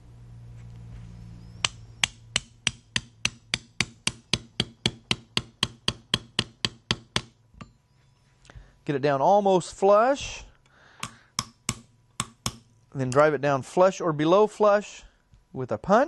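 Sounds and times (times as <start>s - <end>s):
hammer tapping metal pin: 1.6s - 7.8s, 11.0s - 13.2s.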